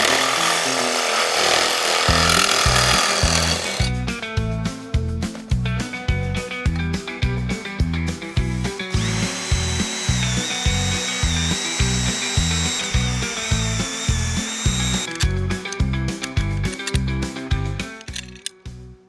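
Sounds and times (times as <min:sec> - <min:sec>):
power drill whining: 0:00.0 - 0:03.9, 0:08.3 - 0:15.3.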